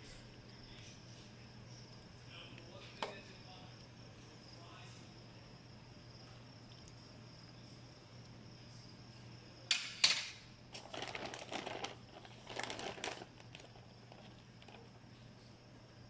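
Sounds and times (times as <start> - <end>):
packaging crinkling: 10.7 - 14.9.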